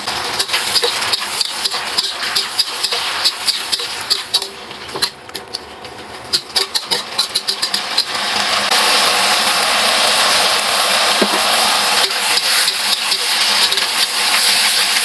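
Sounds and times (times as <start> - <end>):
food sizzling in hot oil: 0.0 - 5.2, 6.2 - 15.0.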